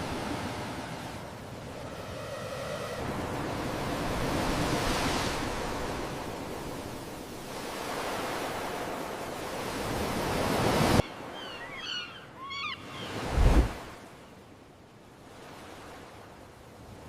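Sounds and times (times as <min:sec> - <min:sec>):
bird chirping calls: 0:11.1 - 0:13.3
ocean surf rushing onto beach: 0:13.1 - 0:14.0.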